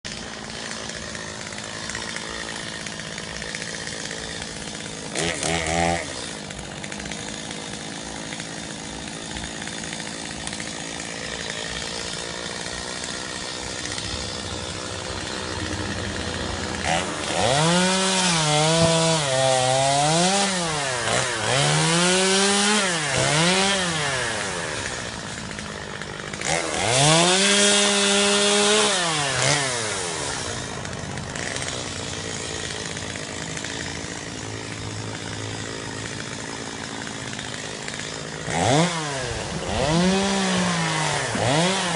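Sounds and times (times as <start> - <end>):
chainsaw engine revving: 0.0 - 41.9.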